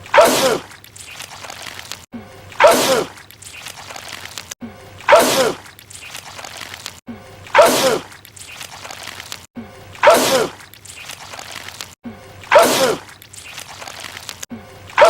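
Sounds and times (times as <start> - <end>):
man sneezing loudly: 10.0 - 10.6, 12.5 - 13.0.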